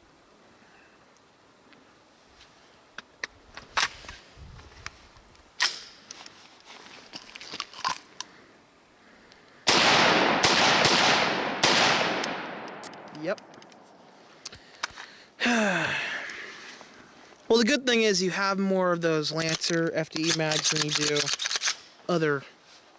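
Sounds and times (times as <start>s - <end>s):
gunshots with long echo: 9.6s - 13.2s
gun metallic clicks: 12.0s - 13.8s, 19.4s - 21.9s.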